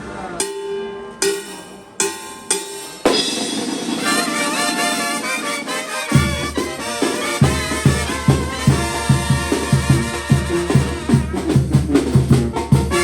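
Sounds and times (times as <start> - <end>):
struck hits with ringing chords: 0.0 - 6.8
wind band playing: 3.9 - 13.0
bass drum beating: 6.1 - 6.8, 7.4 - 13.0.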